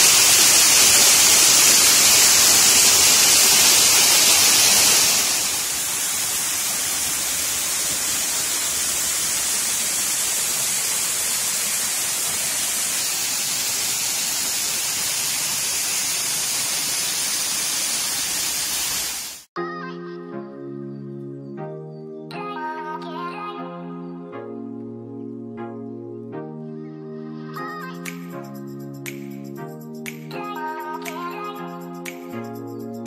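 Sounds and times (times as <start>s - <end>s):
waterfall rushing: 0.0s - 19.5s.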